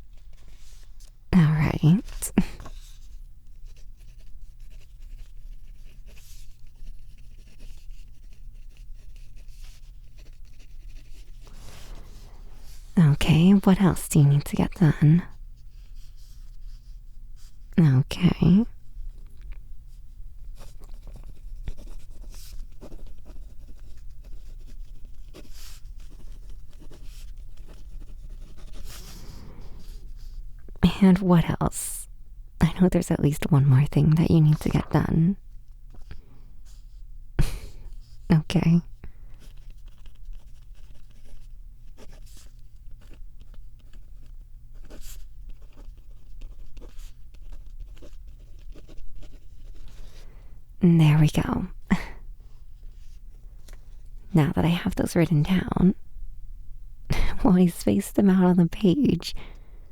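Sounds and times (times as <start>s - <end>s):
pen scratching on paper: 1.7s - 15.3s, 20.6s - 30.4s, 39.4s - 50.2s.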